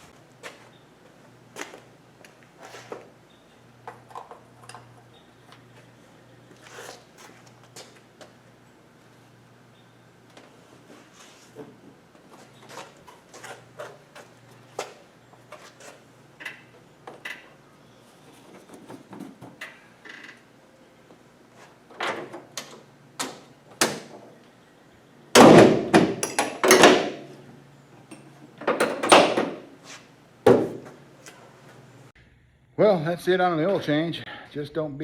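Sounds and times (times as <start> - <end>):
loud bangs and clatter: 25.4 - 27.2.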